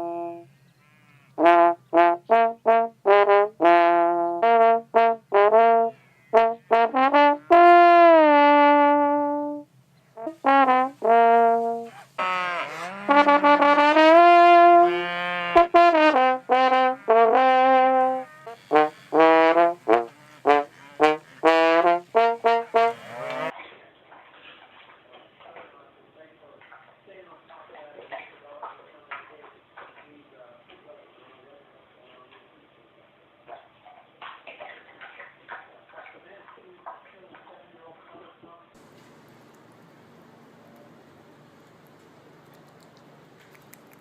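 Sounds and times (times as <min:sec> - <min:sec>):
brass instrument melody: 0:00.0 - 0:23.5.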